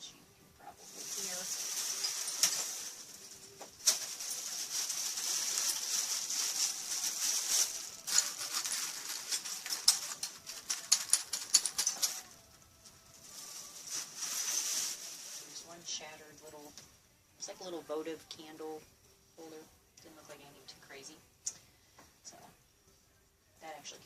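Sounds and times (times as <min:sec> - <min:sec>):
bag rustling: 0:00.8 - 0:12.4, 0:13.2 - 0:15.8
glass shards clinking in a bag: 0:00.8 - 0:12.4, 0:13.3 - 0:15.6.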